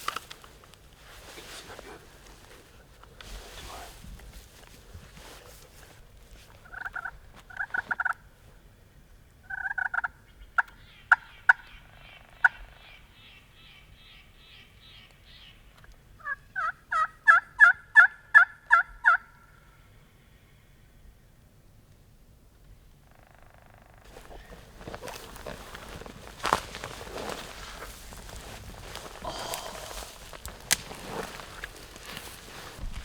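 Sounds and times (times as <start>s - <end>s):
turkey clucking: 6.6s - 8.2s, 9.5s - 13.0s, 16.2s - 19.3s
turkey yelping: 6.6s - 8.2s, 9.5s - 14.1s, 16.2s - 19.5s.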